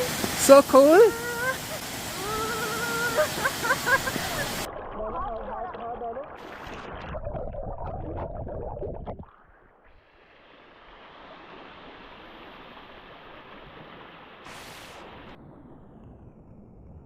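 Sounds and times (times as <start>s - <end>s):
waterfall rushing: 0.0s - 4.8s, 14.1s - 15.3s.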